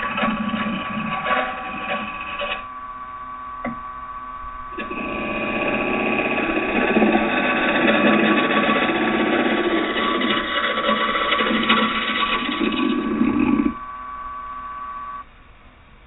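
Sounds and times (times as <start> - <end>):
turning tool cutting wood: 0.0 - 2.7, 4.7 - 13.8
wood lathe motor whine: 0.0 - 15.2.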